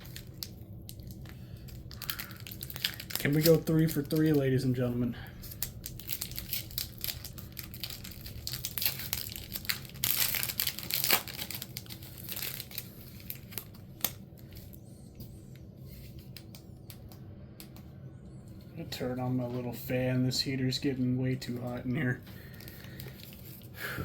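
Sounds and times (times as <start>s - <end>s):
foil wrapper tearing: 0.0s - 4.8s, 5.4s - 14.7s, 22.4s - 23.8s
foil wrapper crinkling: 0.0s - 14.9s, 21.7s - 23.9s.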